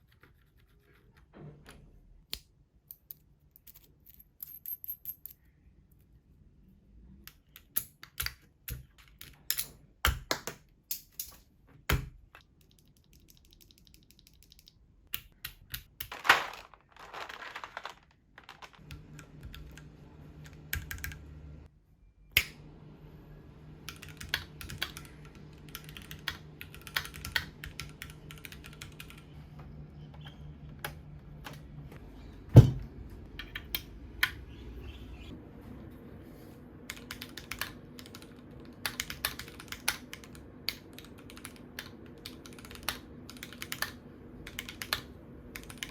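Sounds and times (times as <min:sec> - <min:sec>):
keyboard clicks and key presses: 0:11.9 - 0:16.2, 0:17.0 - 0:21.6, 0:23.8 - 0:29.4, 0:36.9 - 0:45.9
packaging rustling: 0:16.1 - 0:18.8.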